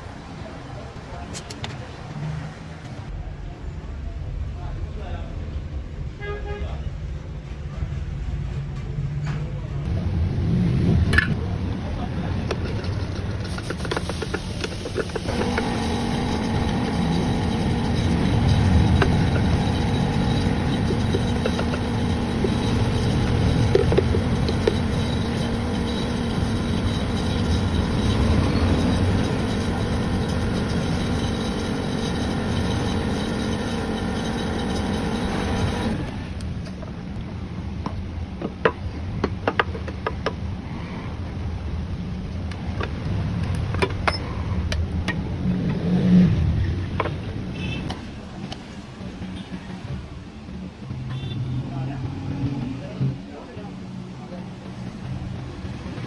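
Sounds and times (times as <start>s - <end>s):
machine motor humming: 12.4s - 36.5s.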